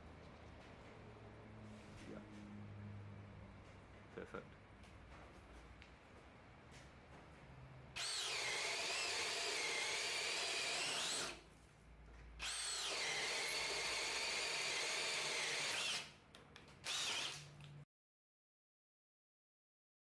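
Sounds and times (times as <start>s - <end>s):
drill boring into wood: 8.0s - 11.4s, 12.4s - 16.1s, 16.8s - 17.5s.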